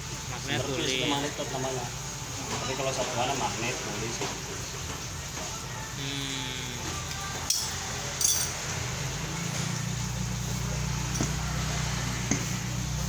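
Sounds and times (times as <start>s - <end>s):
metal tools clinking: 7.5s - 8.7s.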